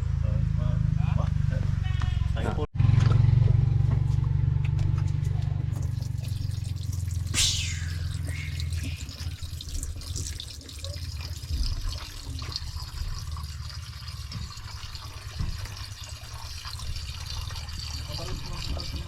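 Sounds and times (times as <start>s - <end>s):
low rumble: 0.0s - 10.0s
water trickling and dripping: 5.7s - 19.0s.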